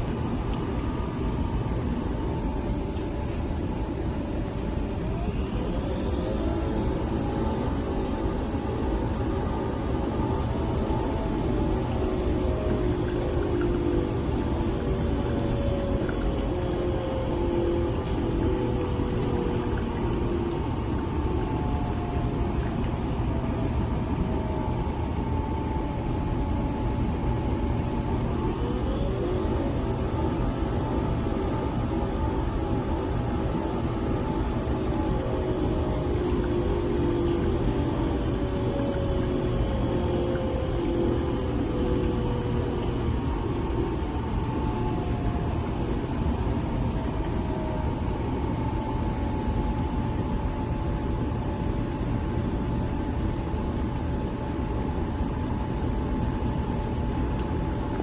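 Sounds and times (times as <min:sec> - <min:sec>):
faint wavering tones: 0:00.0 - 0:24.1, 0:28.1 - 0:47.4
coffee machine whirring: 0:00.0 - 0:58.0
thin whine: 0:00.0 - 0:58.0.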